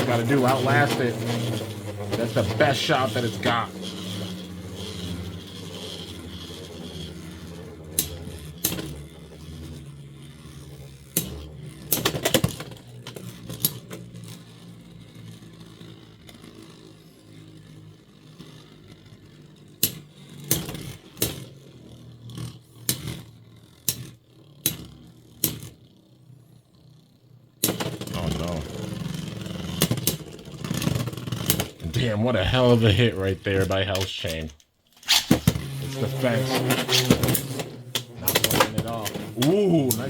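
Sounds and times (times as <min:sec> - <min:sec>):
spinning tops whirring: 0:00.0 - 0:40.0
spinning tops clacking: 0:27.6 - 0:35.6, 0:36.4 - 0:40.0.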